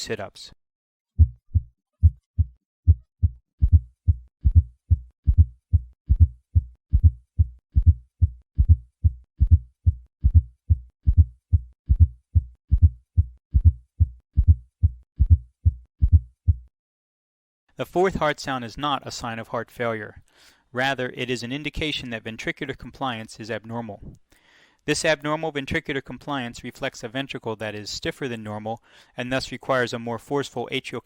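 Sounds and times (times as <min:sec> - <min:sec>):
heartbeat through stethoscope: 0:01.2 - 0:16.7.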